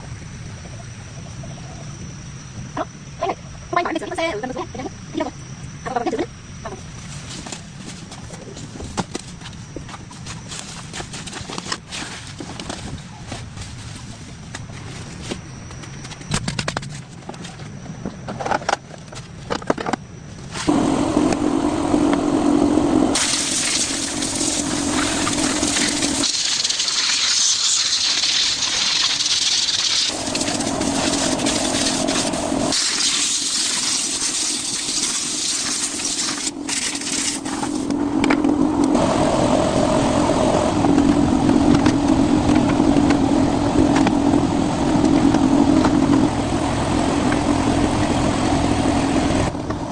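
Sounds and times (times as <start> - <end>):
loud hiss-like noise: 0.0 - 16.4, 20.4 - 49.9
car engine running: 30.1 - 32.8.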